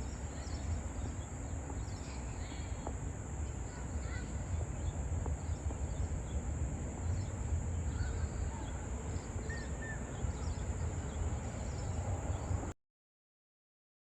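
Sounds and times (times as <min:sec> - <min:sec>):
faint bird chirps: 0:07.0 - 0:12.5.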